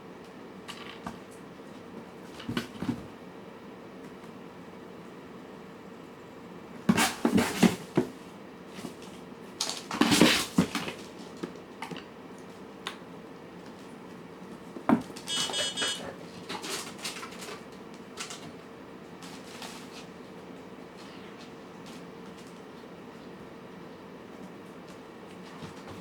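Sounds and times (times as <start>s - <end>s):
cat food dishes clattering: 14.9s - 18.6s.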